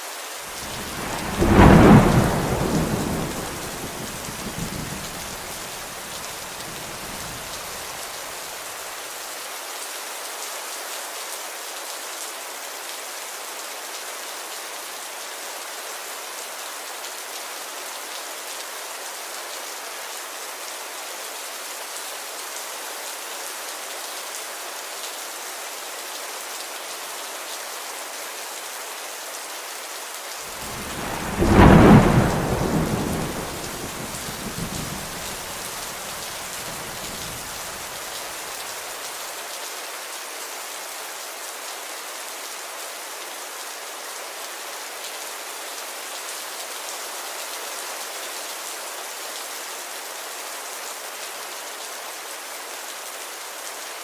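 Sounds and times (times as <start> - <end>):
steady rain: 0.0 - 54.0
thunder rumbling: 0.6 - 7.9, 30.5 - 38.1.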